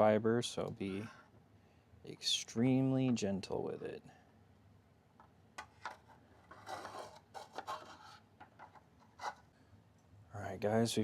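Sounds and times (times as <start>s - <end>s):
faint rubbing: 0.8s - 1.3s, 5.7s - 8.3s.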